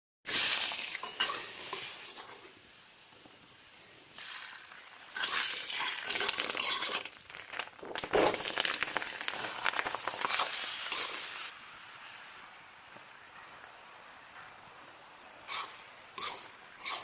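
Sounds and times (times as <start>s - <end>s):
food sizzling in a frying pan: 0.3s - 17.0s
spatula scraping and clinking pan: 1.0s - 2.4s, 15.5s - 17.0s.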